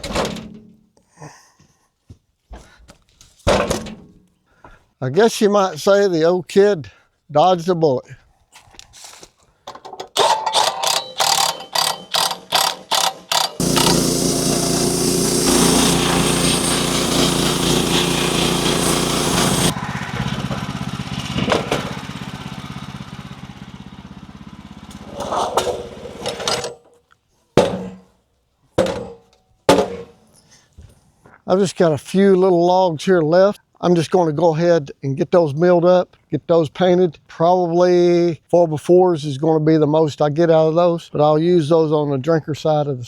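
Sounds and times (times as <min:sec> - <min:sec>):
engine running: 0:11.8 - 0:26.5.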